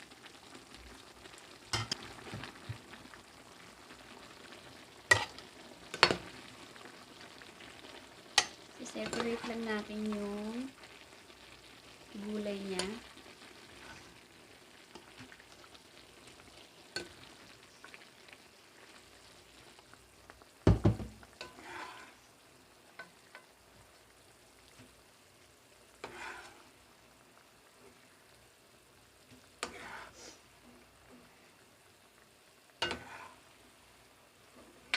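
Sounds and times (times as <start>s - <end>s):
utensil stirring in pot: 4.1s - 7.5s, 8.1s - 11.2s, 12.0s - 18.1s, 21.2s - 25.0s, 25.8s - 26.9s, 29.2s - 31.2s, 32.8s - 33.6s.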